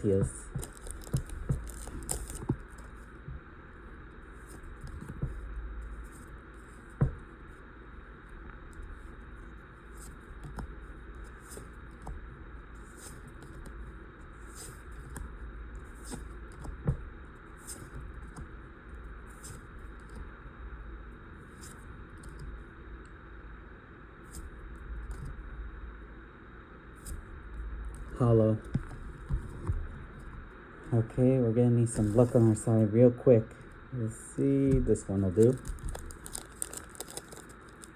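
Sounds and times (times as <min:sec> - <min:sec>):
trading cards flicking and rustling: 0:00.0 - 0:03.1, 0:10.0 - 0:12.2, 0:12.8 - 0:17.0, 0:17.6 - 0:18.5, 0:27.9 - 0:31.0, 0:31.9 - 0:32.7, 0:34.4 - 0:37.9.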